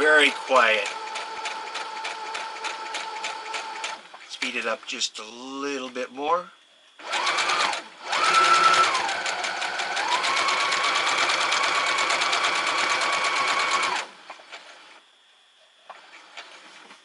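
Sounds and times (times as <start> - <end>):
sewing machine stitching: 0.0 - 4.1, 7.0 - 15.0.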